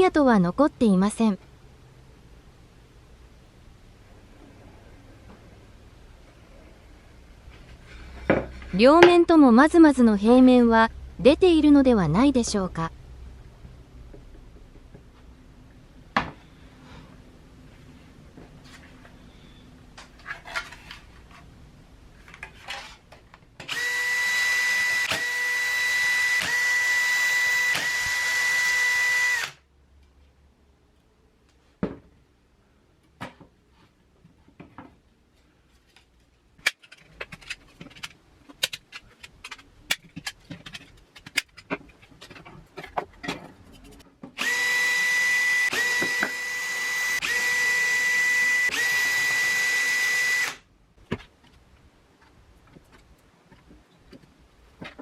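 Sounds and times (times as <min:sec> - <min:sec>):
power tool motor running: 0:23.7 - 0:29.6, 0:44.4 - 0:50.6
parts clicking and knocking: 0:35.9 - 0:44.5.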